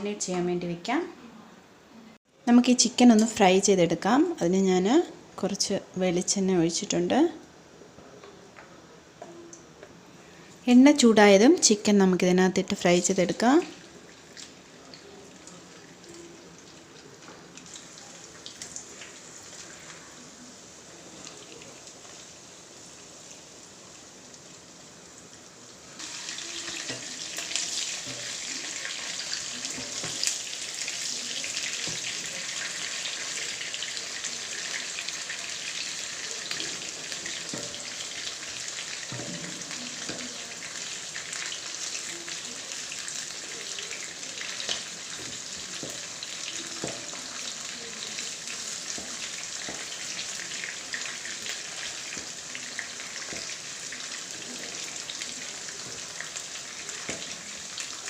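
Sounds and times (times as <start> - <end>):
chicken sizzling in oil: 13.0 - 58.0.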